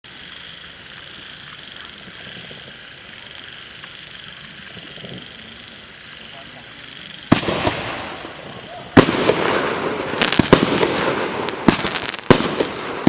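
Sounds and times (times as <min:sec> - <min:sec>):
frogs and insects trilling: 0:00.0 - 0:10.4.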